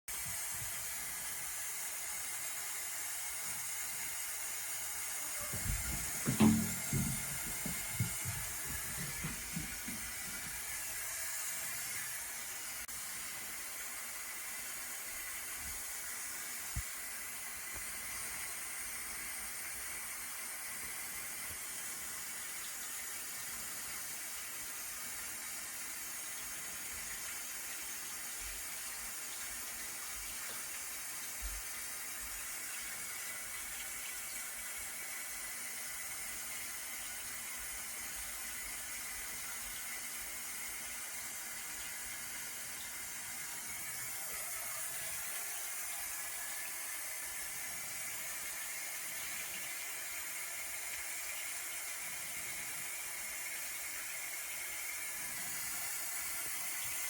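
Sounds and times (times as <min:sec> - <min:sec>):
steady hiss: 0:00.1 - 0:57.0
thumps and knocks on floor: 0:05.5 - 0:10.6.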